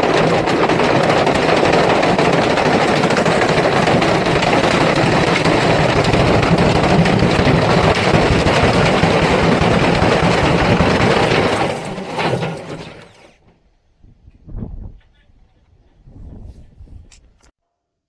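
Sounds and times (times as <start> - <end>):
washing machine clattering and banging: 0.0 - 13.4.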